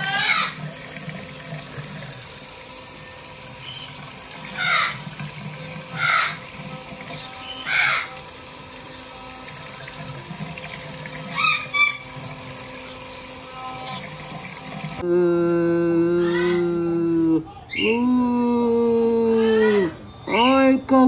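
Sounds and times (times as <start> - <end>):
parrot squawking: 0.0 - 0.6, 3.6 - 5.2, 5.8 - 8.2, 11.2 - 12.2, 19.4 - 20.6
water tap running: 0.0 - 15.0.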